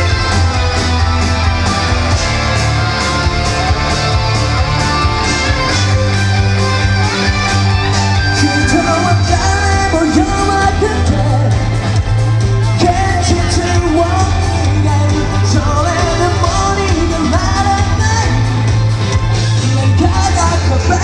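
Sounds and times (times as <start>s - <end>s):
live rock band playing: 0.0s - 21.0s
person singing: 8.2s - 18.9s, 19.5s - 21.0s.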